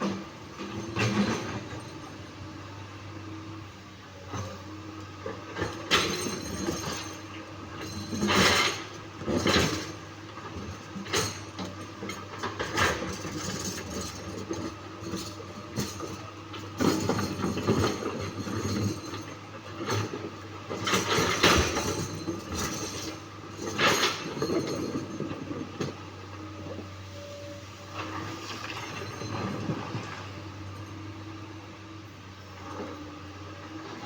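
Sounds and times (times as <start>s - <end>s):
boulders clanking in steel bucket: 8.0s - 26.0s.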